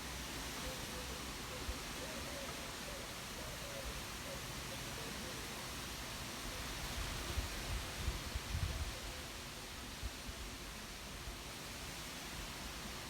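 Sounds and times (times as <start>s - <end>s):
wind rustling leaves: 5.6s - 13.0s.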